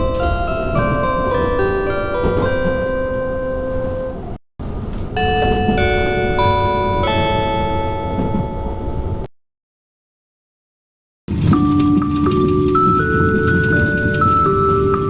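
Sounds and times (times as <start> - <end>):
bell-like chime melody over pa: 0.0 - 4.3, 5.2 - 9.3
train running rumble: 0.0 - 9.2, 11.3 - 15.0.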